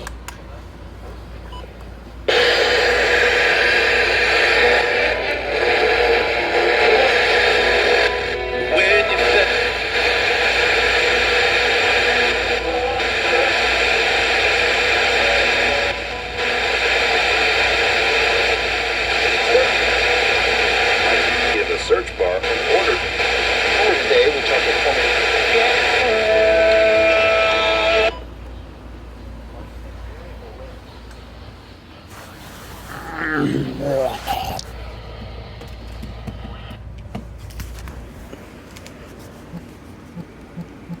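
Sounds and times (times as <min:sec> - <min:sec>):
radio static hiss: 0:02.3 - 0:28.1
hiss: 0:32.1 - 0:33.8.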